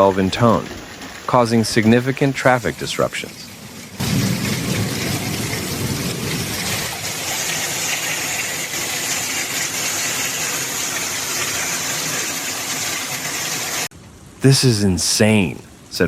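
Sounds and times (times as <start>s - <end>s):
heavy rain downpour: 0.0s - 14.3s.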